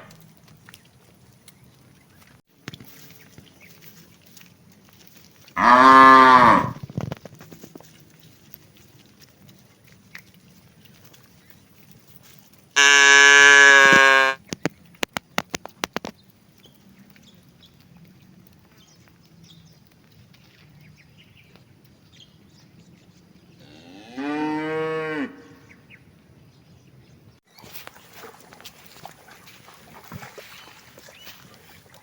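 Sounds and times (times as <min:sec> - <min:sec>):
cattle mooing: 0:05.6 - 0:06.8, 0:12.8 - 0:14.4.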